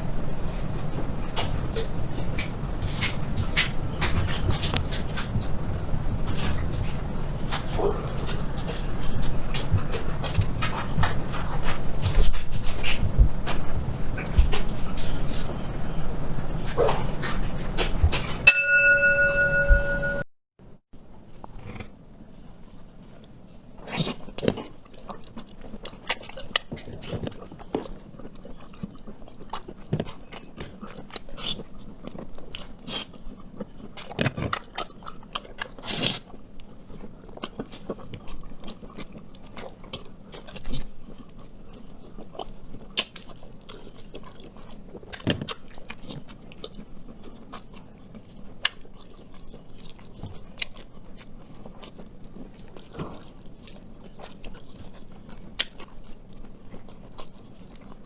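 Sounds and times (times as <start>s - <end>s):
person biting and chewing: 23.8s - 58.0s.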